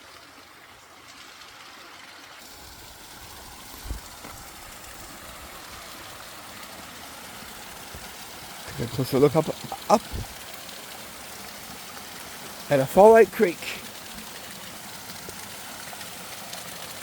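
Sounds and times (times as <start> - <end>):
creek splashing over rocks: 0.0 - 17.0.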